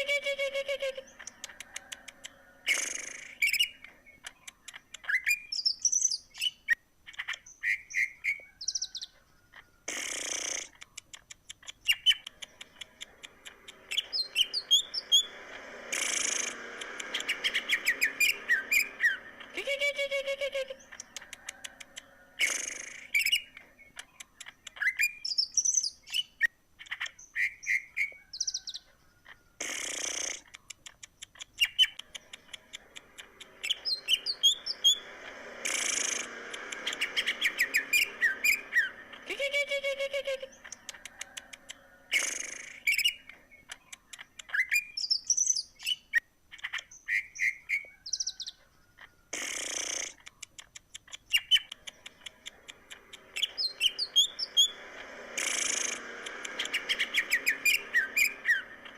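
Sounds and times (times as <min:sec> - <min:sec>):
harsh rasping bird calls: 0:00.0 - 0:58.9
songbird singing: 0:00.0 - 0:58.9
harsh rasping bird call: 0:12.8 - 0:23.5, 0:32.5 - 0:43.2, 0:51.4 - 0:58.9.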